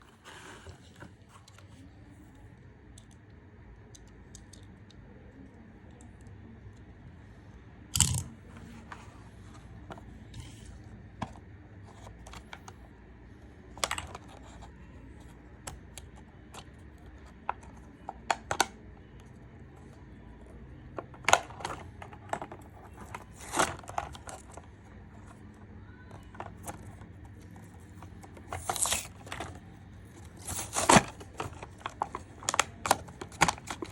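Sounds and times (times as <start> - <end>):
packaging tearing and rustling: 30.4 - 33.9.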